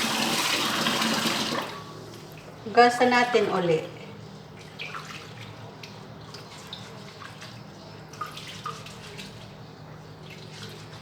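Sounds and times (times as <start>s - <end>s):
water splashing and dripping: 4.6s - 9.6s.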